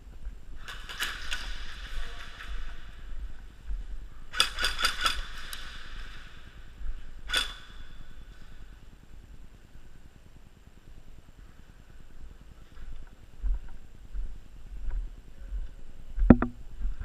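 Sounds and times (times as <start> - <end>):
airsoft guns firing: 0.6 - 2.9, 4.3 - 6.6, 7.2 - 8.2.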